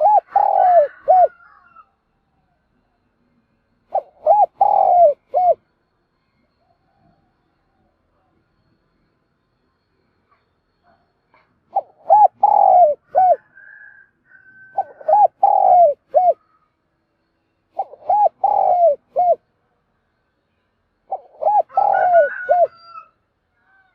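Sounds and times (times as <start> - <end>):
dove cooing: 0.0 - 1.7, 3.9 - 5.6, 11.4 - 13.8, 14.6 - 16.6, 17.7 - 19.4, 21.1 - 23.1.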